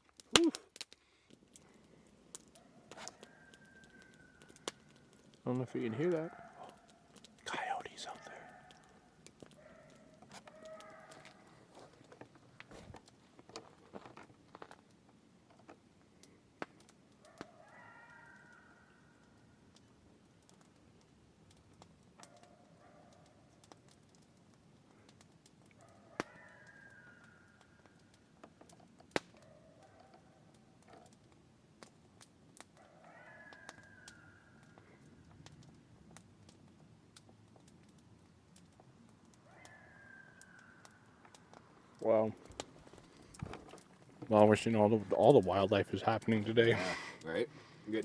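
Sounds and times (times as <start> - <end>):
faint clicks and ticks: 0.0 - 18.6, 19.2 - 45.4
campfire crackling and popping: 0.0 - 48.0
distant coyotes howling: 1.7 - 12.4, 17.1 - 19.8, 25.7 - 28.4, 29.3 - 31.0, 32.8 - 35.8, 39.3 - 42.3.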